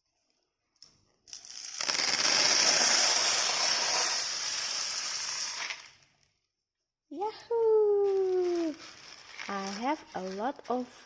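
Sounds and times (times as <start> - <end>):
dry grain poured into toy: 1.3 - 5.8.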